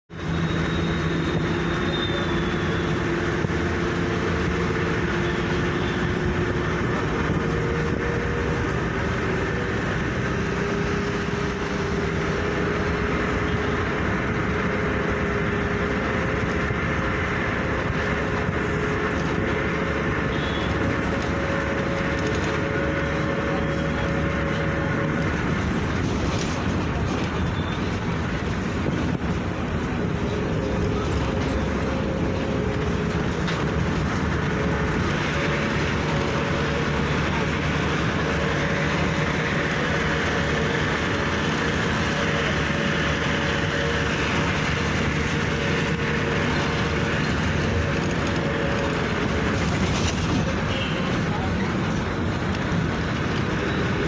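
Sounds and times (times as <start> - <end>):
vehicle running rumble: 0.0 - 54.0.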